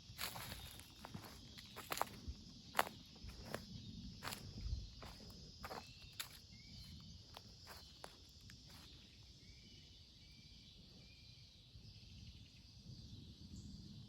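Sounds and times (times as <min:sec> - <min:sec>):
crackles in leaf litter: 0:00.0 - 0:03.6
insect drone: 0:00.0 - 0:14.0.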